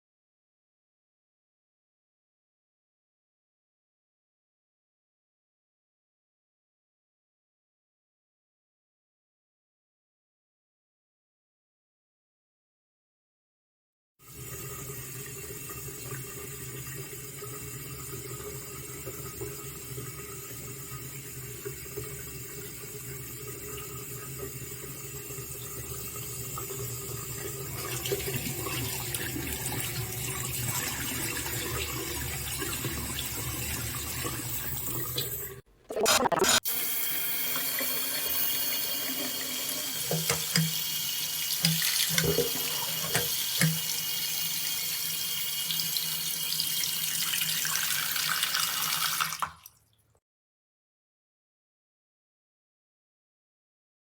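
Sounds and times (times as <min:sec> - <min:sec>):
faucet water running into sink: 0:14.2 - 0:49.9.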